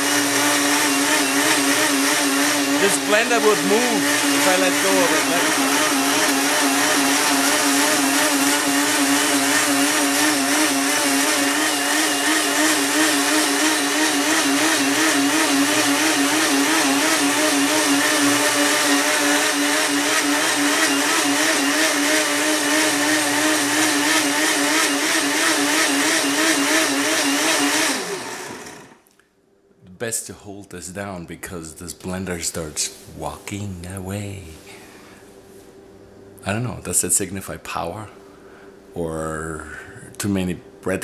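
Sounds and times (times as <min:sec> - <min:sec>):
blender motor winding down: 0:00.0 - 0:29.0
blender running: 0:00.0 - 0:29.1.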